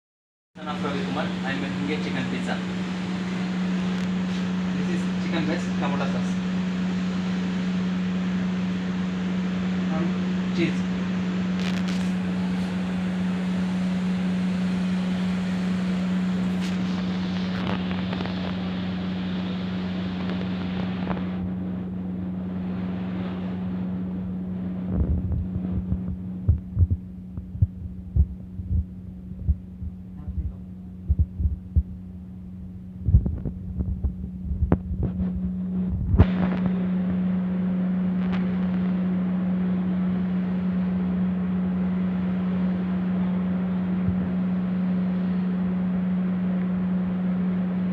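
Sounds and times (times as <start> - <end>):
low hum: 0.6 - 47.9
muffled low thumps: 23.8 - 37.4.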